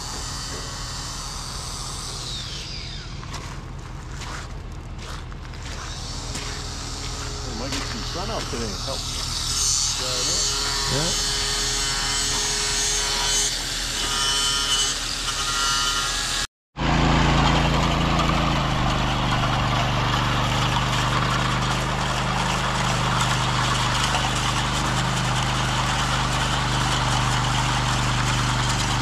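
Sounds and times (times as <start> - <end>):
high whining machine: 0.0 - 3.7, 5.7 - 29.0
engine running steadily: 16.8 - 29.0.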